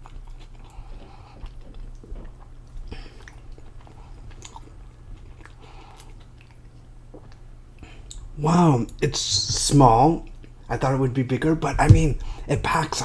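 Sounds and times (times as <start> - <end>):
person chewing: 0.0 - 8.2.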